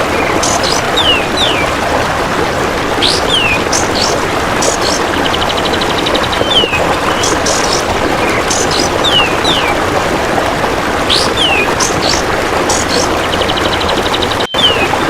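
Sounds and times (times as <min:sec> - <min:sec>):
bird whistles and chirps: 0:14.4 - 0:14.9.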